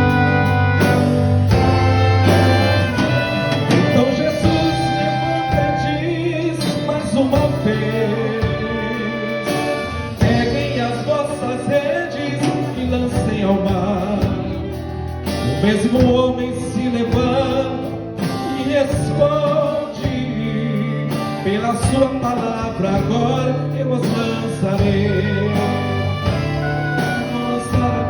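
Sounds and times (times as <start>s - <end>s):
wind band playing: 0.0s - 12.2s, 24.7s - 28.0s.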